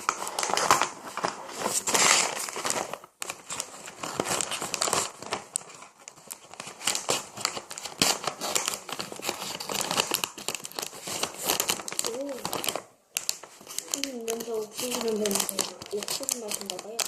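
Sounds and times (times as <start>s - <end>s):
plastic snack bag crinkling: 0.0s - 17.0s
chips rattling out of bag: 13.6s - 17.0s.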